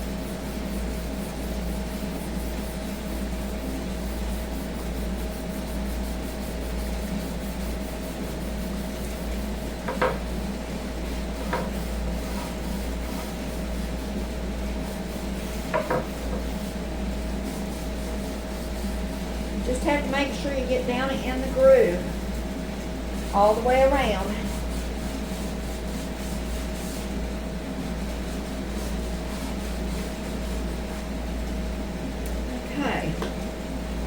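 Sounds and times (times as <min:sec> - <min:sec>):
steady low hum: 0:00.0 - 0:34.0
hand rubbing wooden board: 0:11.4 - 0:14.0, 0:14.8 - 0:16.8.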